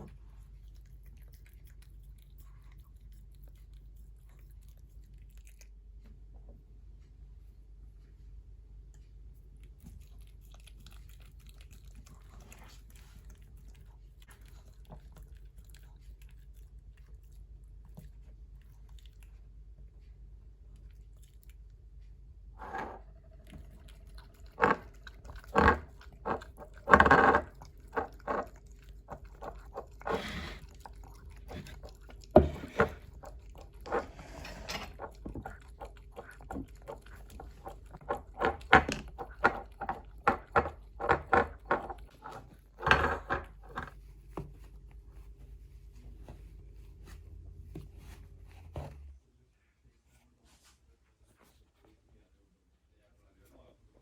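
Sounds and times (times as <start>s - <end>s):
dog crunching food: 0.4s - 5.8s, 9.6s - 19.4s, 22.6s - 44.1s.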